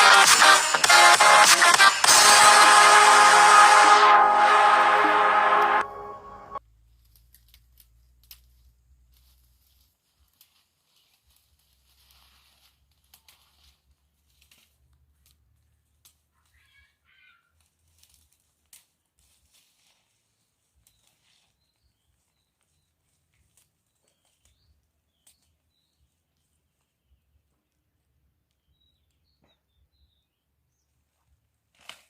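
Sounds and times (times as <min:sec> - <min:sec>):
faint rustling: 0:06.8 - 0:15.2.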